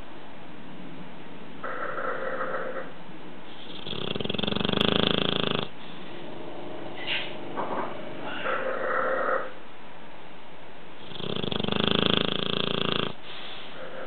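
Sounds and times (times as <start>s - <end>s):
dog snoring: 1.6s - 2.9s, 3.5s - 5.8s, 11.0s - 14.0s.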